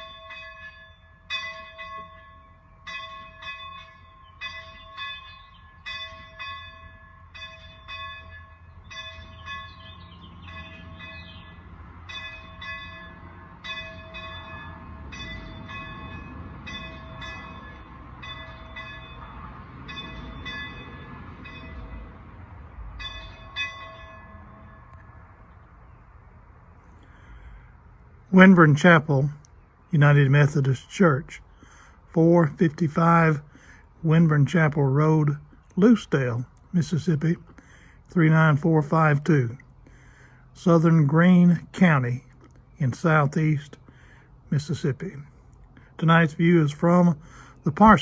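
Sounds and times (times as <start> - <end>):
church bell ringing: 0.0 - 25.4.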